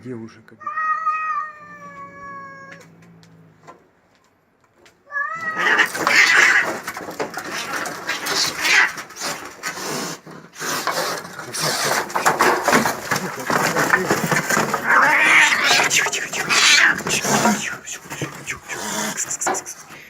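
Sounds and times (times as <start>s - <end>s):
cat yowling: 0.6s - 3.0s, 5.0s - 6.8s, 14.7s - 17.8s
cats screeching and scuffling: 0.6s - 4.0s, 4.9s - 20.0s.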